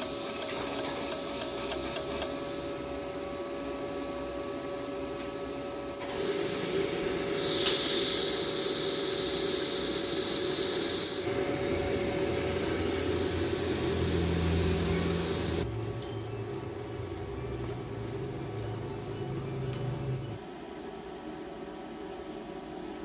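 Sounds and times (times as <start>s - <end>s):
welding arc hiss: 0.0s - 15.7s
welding machine hum: 0.0s - 20.4s.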